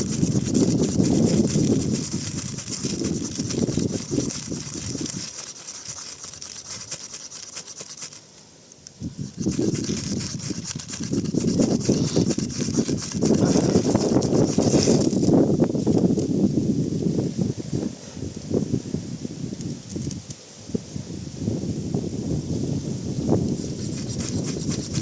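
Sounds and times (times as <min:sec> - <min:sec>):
fire steel rasping: 0:00.0 - 0:08.4, 0:09.0 - 0:15.9, 0:23.5 - 0:25.0.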